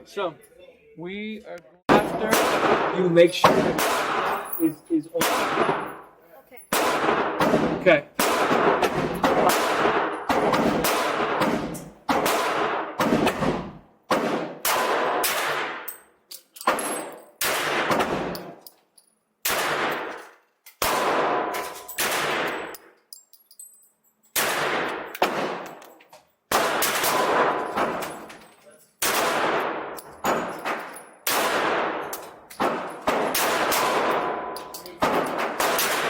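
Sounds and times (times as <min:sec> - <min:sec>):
pistol shots echoing: 0:01.9 - 0:06.0, 0:06.7 - 0:15.9, 0:16.7 - 0:18.6, 0:19.4 - 0:20.2, 0:20.8 - 0:22.8, 0:24.4 - 0:25.8, 0:26.5 - 0:28.3, 0:29.0 - 0:36.0.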